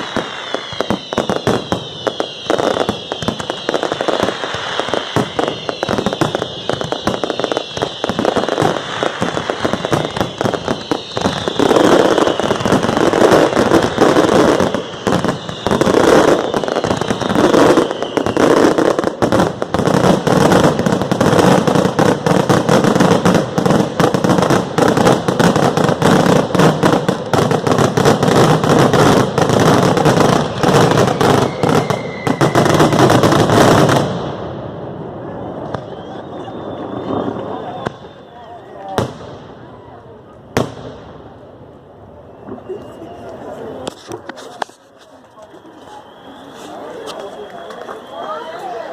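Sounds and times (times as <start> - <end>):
high falling whistle: 0.0 - 8.6, 9.4 - 12.8, 13.4 - 18.8, 30.4 - 33.1, 35.4 - 38.6, 42.2 - 43.6, 45.3 - 48.9
fireworks bangs and crackling: 0.0 - 48.9.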